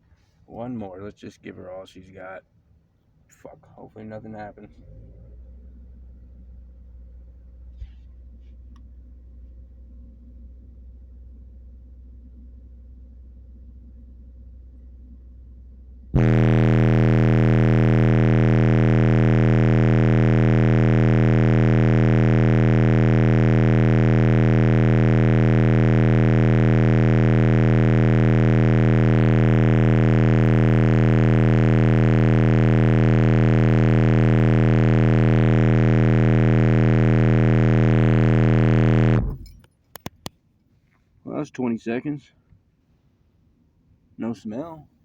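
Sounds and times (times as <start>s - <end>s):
loud bass test tone: 16.2s - 39.5s.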